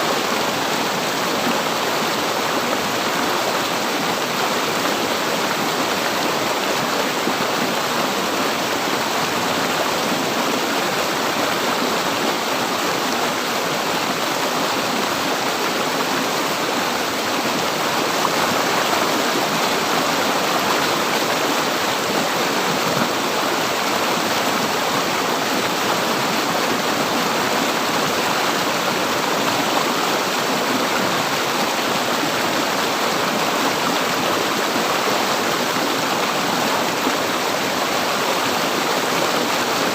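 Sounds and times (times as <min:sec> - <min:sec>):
river water flowing and splashing: 0:00.0 - 0:39.9.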